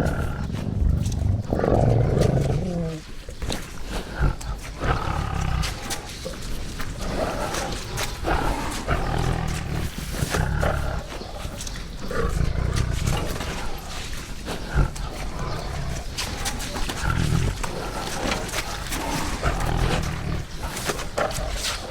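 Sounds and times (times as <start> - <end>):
tiger roaring: 0.0 - 21.9.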